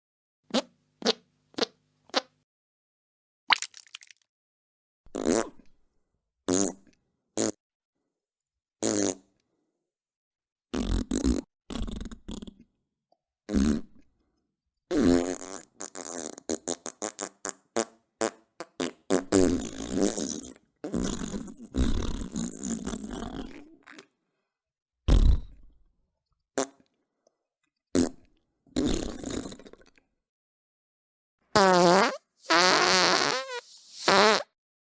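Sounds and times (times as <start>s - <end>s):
fart sound effects: 31.6s - 34.5s.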